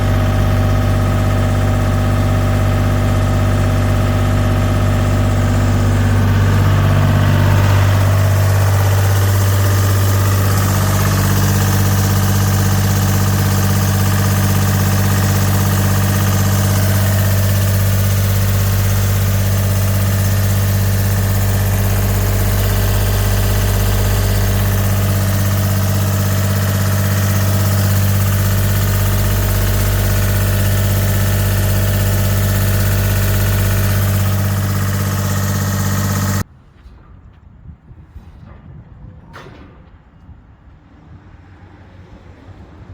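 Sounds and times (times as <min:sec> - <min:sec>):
diesel engine idling: 0:00.0 - 0:36.5.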